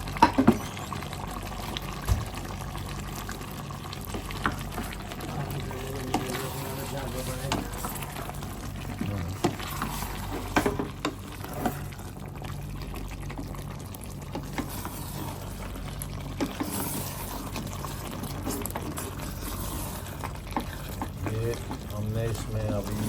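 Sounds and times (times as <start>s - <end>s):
gravy bubbling: 0.0s - 23.0s
metal spoon stirring in a pot: 3.9s - 12.2s, 14.2s - 23.0s.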